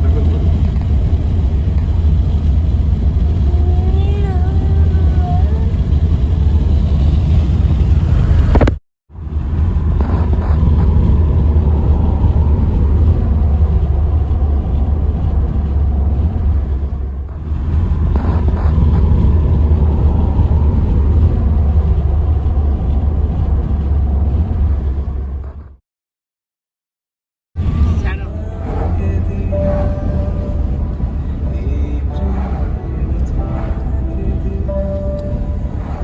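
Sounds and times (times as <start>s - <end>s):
road and engine noise: 0.0s - 25.8s, 27.6s - 36.0s.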